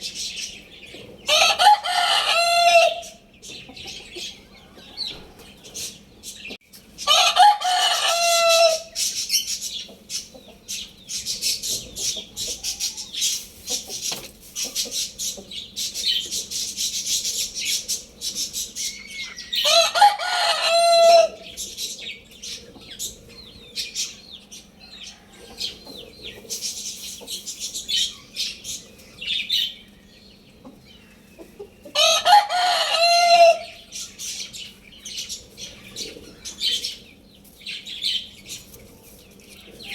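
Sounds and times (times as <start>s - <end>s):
rooster crowing: 1.3s - 3.2s, 7.0s - 9.0s, 19.4s - 21.5s, 24.8s - 25.9s, 31.9s - 33.9s.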